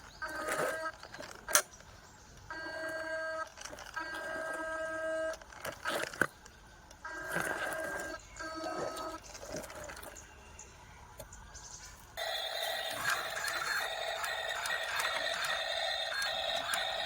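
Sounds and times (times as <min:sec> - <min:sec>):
sharp clicks: 0:12.2 - 0:17.0
small electric motors whining: 0:12.2 - 0:17.0.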